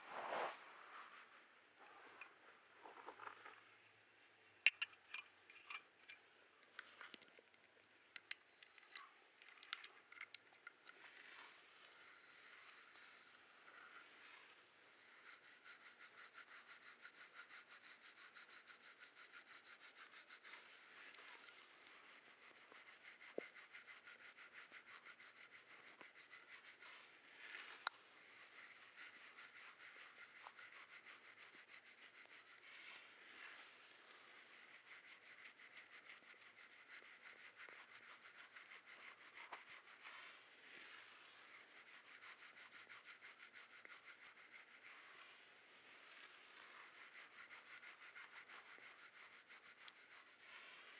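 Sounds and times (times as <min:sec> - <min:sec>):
brush rubbing: 0:00.0 - 0:01.2, 0:14.9 - 0:33.2, 0:34.1 - 0:40.4, 0:41.2 - 0:45.3, 0:46.2 - 0:50.9.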